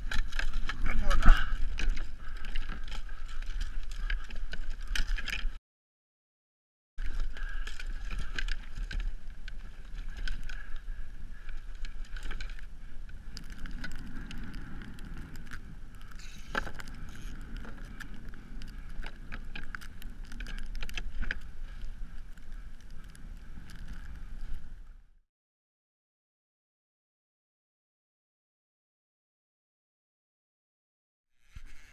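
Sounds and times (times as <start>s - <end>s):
gear clicking and rattling: 0.0s - 5.6s, 7.0s - 24.7s
wind: 0.0s - 5.6s, 7.0s - 25.2s, 31.3s - 31.9s.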